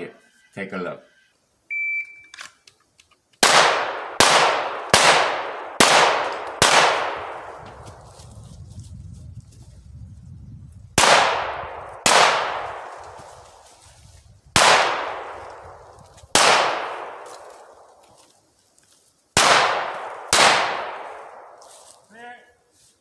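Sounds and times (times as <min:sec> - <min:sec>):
pistol shots: 0:03.4 - 0:07.6, 0:11.0 - 0:13.2, 0:14.6 - 0:17.9, 0:19.4 - 0:21.6.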